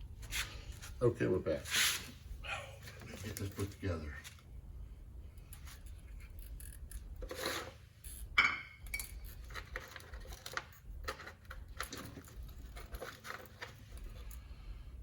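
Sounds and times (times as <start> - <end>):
metal parts and tools clinking: 5.4 - 14.4.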